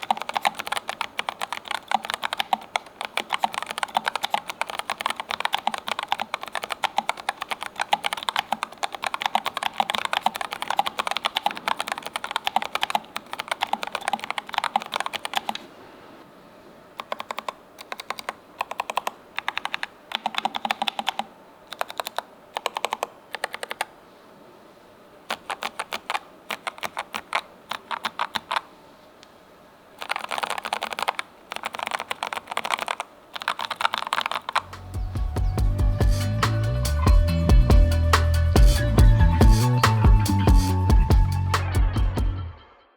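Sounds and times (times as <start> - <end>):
mechanical keyboard typing: 0.0 - 15.8, 17.0 - 24.0, 25.3 - 28.7, 30.0 - 37.2.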